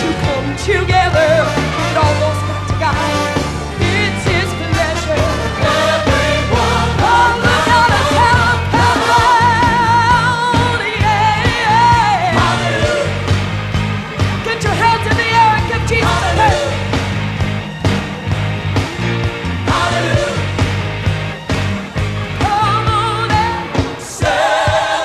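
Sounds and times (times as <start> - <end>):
band with bass and drums: 0.0 - 25.0
choir singing: 3.8 - 13.4, 14.5 - 17.1, 19.4 - 20.9, 22.6 - 25.0.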